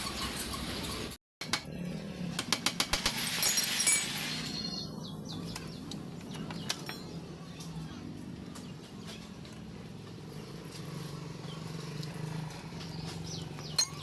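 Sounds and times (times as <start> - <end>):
hand tools clinking on metal: 12.4 - 14.0.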